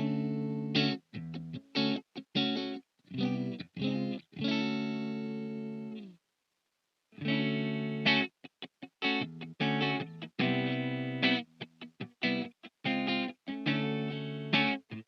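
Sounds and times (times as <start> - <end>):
electric guitar chords: 0.0 - 6.1, 7.2 - 15.0.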